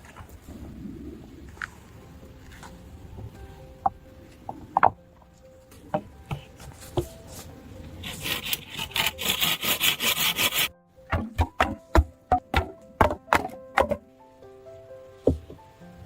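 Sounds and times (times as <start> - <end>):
wood knocking on wood: 5.9 - 7.2, 11.1 - 14.0, 15.2 - 15.6
saw cutting through wood: 8.0 - 10.7.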